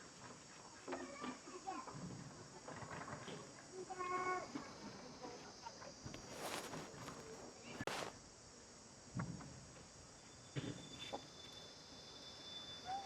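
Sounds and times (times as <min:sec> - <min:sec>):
short rustles: 0:06.0 - 0:08.2.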